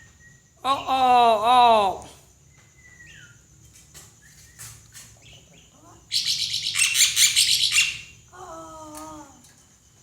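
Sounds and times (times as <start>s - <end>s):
bird chirping and chattering: 4.2s - 8.2s.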